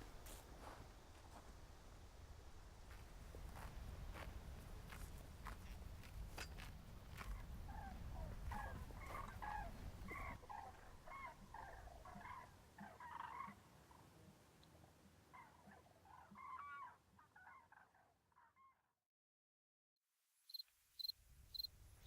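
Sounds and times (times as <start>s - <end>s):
small birds chirping: 7.1s - 14.8s, 20.5s - 21.7s.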